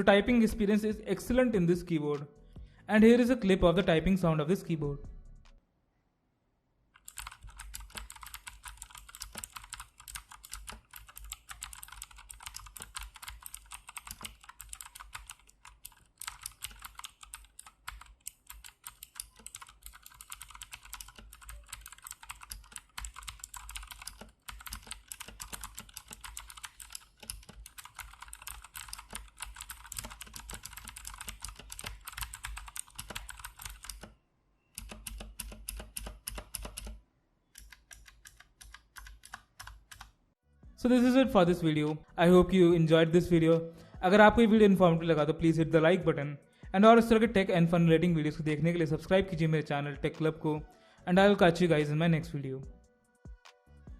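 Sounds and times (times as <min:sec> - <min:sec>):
fast mechanical keyboard typing: 0:07.0 - 0:34.1, 0:34.8 - 0:37.0, 0:37.6 - 0:40.1.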